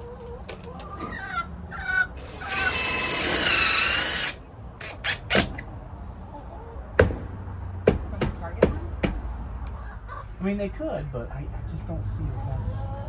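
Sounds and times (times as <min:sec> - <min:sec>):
cordless drill whining: 0:02.2 - 0:05.6.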